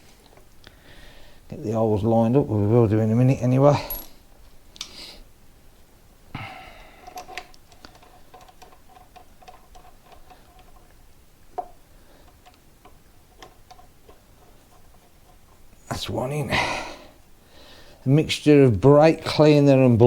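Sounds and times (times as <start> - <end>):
small metallic clicks and taps: 7.0 - 15.4.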